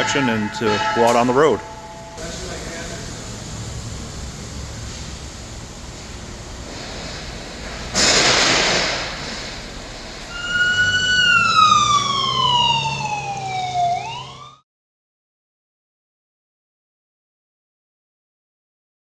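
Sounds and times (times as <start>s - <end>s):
sudden hiss: 2.2s - 9.7s
ambulance siren wailing: 10.3s - 14.6s.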